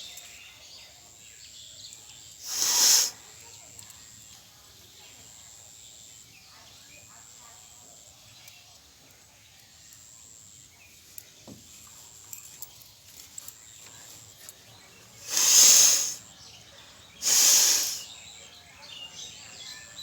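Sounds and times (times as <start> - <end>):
person blowing nose: 2.4 - 3.2, 15.2 - 16.2, 17.2 - 18.1.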